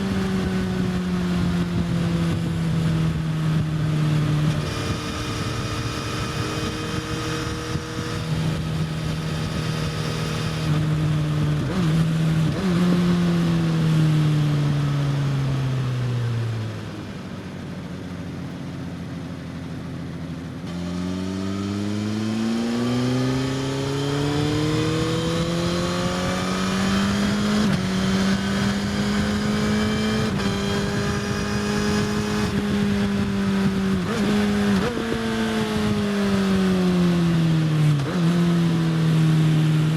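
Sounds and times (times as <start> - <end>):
motorcycle engine revving: 0.0 - 18.2, 18.8 - 39.9.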